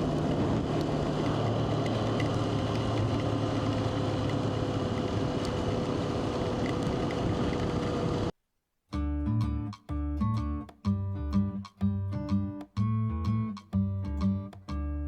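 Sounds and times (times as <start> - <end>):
wind noise on microphone: 0.0 - 3.4
motorcycle engine hum: 0.0 - 8.3.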